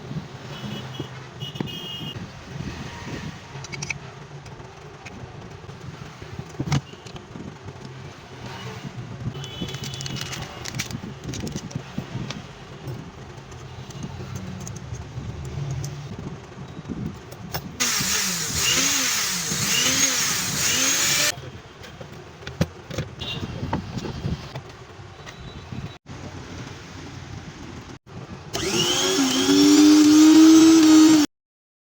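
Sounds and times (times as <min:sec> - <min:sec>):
mixer grinder motor whirring: 0:17.8 - 0:21.3, 0:28.5 - 0:31.3.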